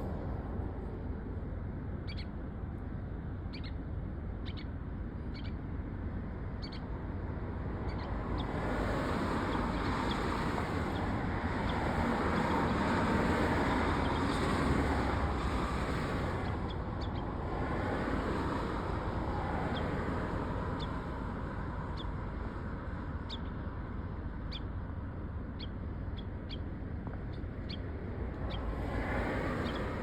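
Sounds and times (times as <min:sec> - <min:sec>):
wind: 0:00.0 - 0:30.0.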